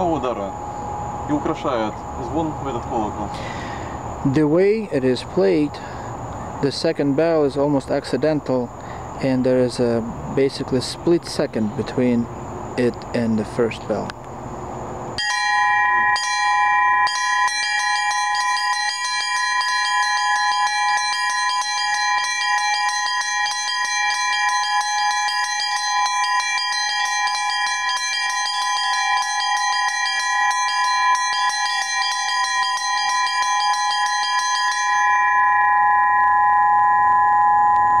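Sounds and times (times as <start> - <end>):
small church bells ringing: 0.0 - 3.8, 15.2 - 38.0.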